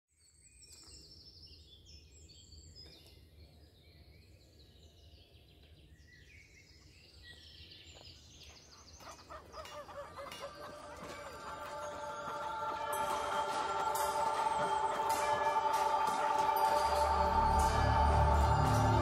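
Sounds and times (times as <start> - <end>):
songbirds chirping: 0.1 - 19.0
music: 9.0 - 19.0.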